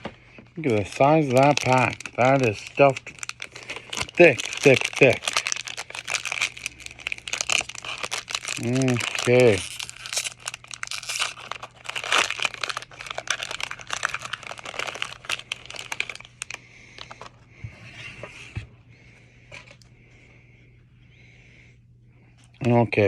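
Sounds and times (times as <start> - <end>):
wrapper tearing and crinkling: 0.6 - 17.2.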